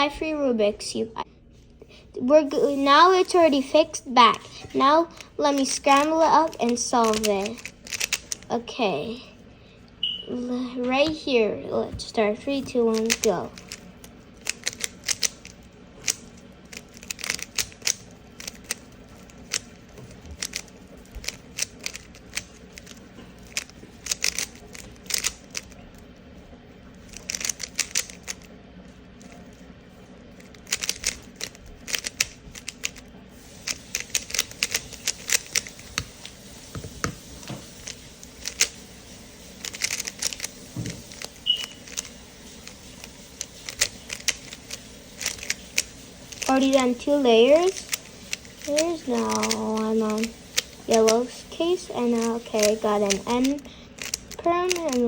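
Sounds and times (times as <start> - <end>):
puzzle cube clicking: 5.1 - 8.5, 12.7 - 13.8, 14.4 - 25.8, 27.1 - 28.5, 30.4 - 33.0, 33.6 - 38.8, 39.6 - 46.9, 47.6 - 55.0.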